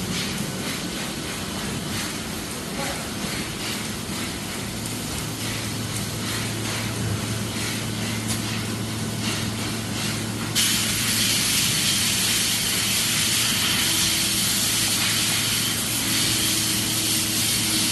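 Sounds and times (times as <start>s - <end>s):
factory hum: 0.0s - 17.9s
air hissing: 9.2s - 17.9s.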